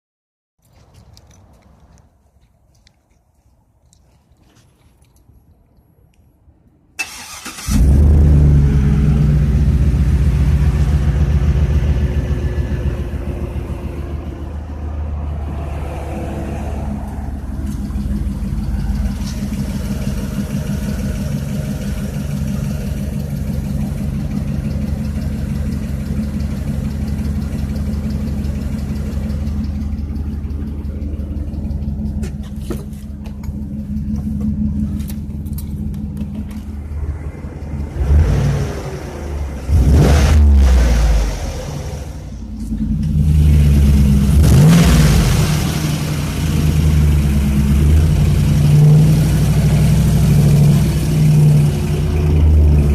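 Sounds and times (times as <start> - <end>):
engine cranking and starting: 7.0 - 8.4
engine idling: 7.0 - 15.2, 16.8 - 52.9.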